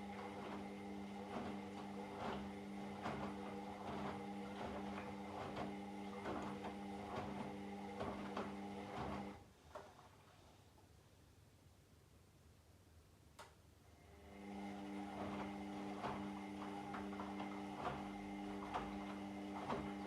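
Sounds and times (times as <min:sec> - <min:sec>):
washing machine motor humming: 0:00.0 - 0:09.4, 0:14.0 - 0:20.0
faint click: 0:13.4 - 0:13.6.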